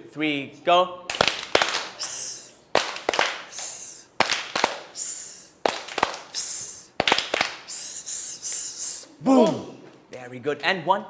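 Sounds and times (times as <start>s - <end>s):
hand claps: 1.1s - 8.7s
short high hiss: 2.0s - 2.6s, 3.5s - 4.1s, 5.0s - 5.6s, 6.3s - 7.0s, 7.6s - 9.2s.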